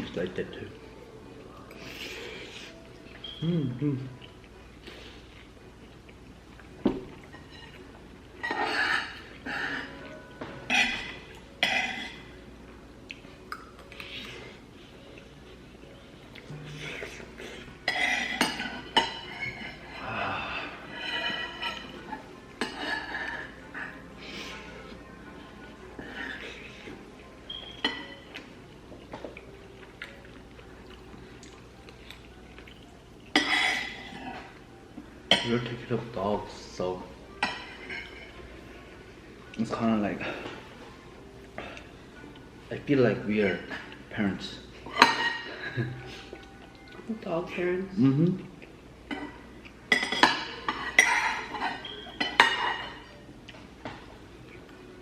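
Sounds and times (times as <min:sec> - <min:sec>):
person chewing food: 0:01.2 - 0:08.4, 0:13.0 - 0:34.8, 0:46.1 - 0:47.1, 0:48.4 - 0:50.0.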